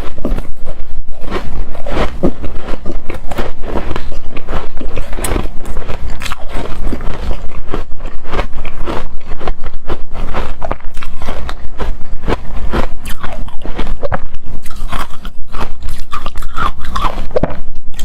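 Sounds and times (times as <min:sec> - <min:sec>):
chewing crunchy ice: 0:00.0 - 0:18.0.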